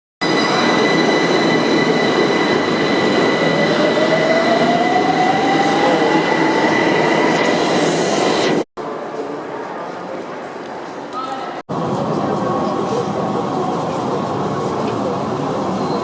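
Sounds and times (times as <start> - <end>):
train high whine: 0.2 - 8.7.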